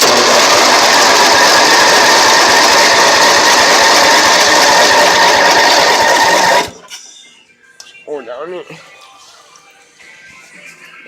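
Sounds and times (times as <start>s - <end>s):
electric starter cranking engine: 0.0s - 6.7s.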